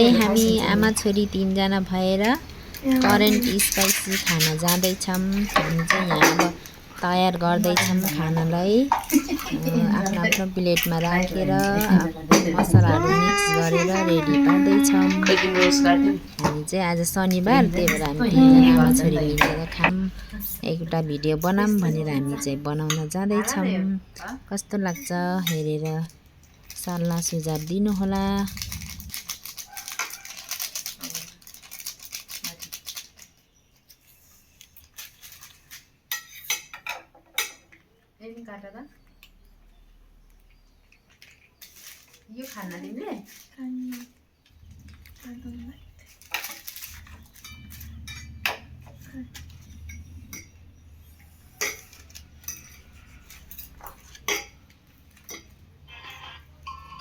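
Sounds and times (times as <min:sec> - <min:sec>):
instant noodles crackling being mixed: 0:00.0 - 0:23.3, 0:24.5 - 0:36.0
cutlery clinking against plates: 0:03.1 - 0:07.0, 0:07.6 - 0:16.7, 0:35.3 - 0:37.9, 0:51.5 - 0:55.7.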